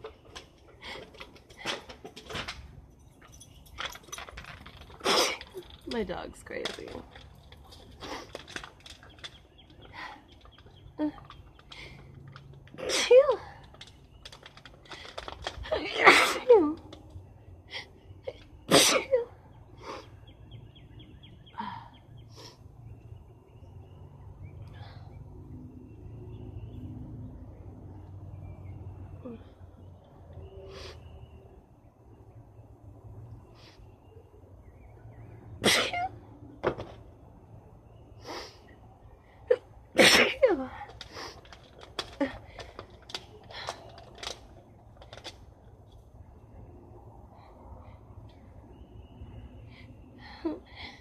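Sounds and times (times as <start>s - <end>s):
faint breaths: 49.4s - 51.0s.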